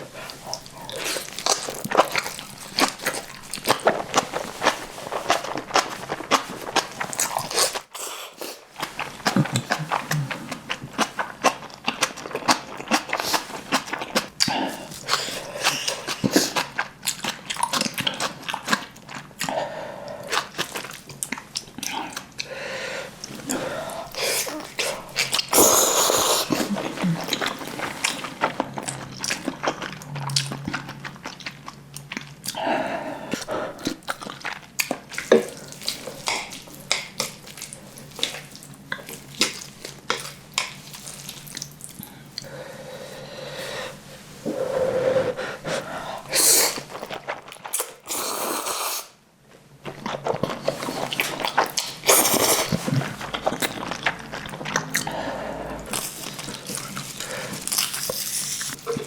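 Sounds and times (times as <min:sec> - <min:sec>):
wet chewing and mouth smacks: 0:00.2 - 0:19.6, 0:33.3 - 0:42.5, 0:49.8 - 0:55.2, 0:55.8 - 0:59.0.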